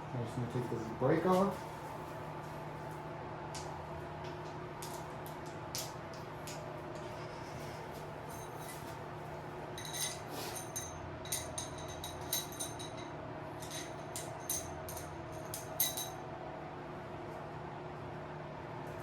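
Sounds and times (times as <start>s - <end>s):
steady background hum: 0.0s - 19.0s
metal hand tools clinking: 9.8s - 16.2s.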